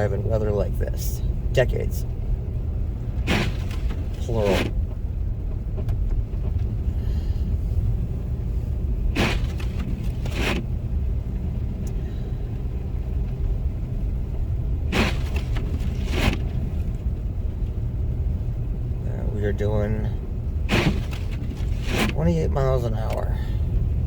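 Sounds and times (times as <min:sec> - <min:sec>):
car driving rumble: 0:00.0 - 0:24.0
windshield wipers sweeping glass: 0:03.1 - 0:06.8, 0:09.0 - 0:10.8, 0:14.8 - 0:17.0, 0:20.6 - 0:22.2.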